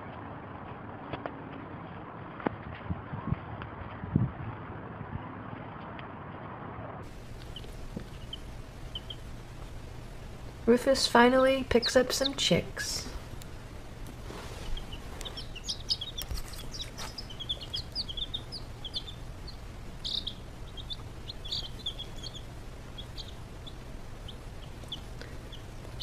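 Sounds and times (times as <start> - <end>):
low steady hum: 0.0 - 26.0
baby chicks peeping: 7.0 - 26.0.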